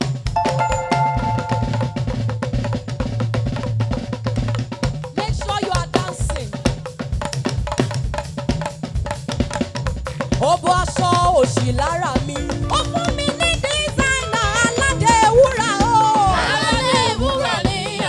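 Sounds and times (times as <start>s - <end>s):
drum kit beat: 0.0s - 3.2s, 4.0s - 18.0s
singing or keyboard melody: 0.4s - 2.4s.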